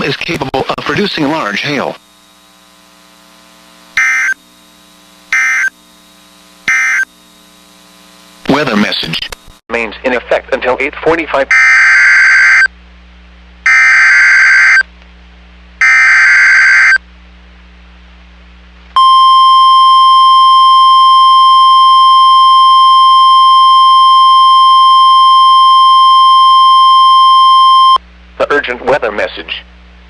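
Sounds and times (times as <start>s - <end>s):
buzzing data bursts: 0.8s - 9.6s, 11.5s - 12.7s, 13.6s - 14.8s
steady alert tone: 6.7s - 7.1s.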